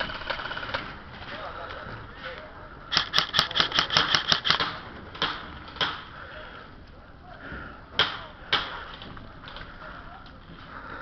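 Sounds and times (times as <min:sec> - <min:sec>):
airsoft guns firing: 0:02.9 - 0:06.1.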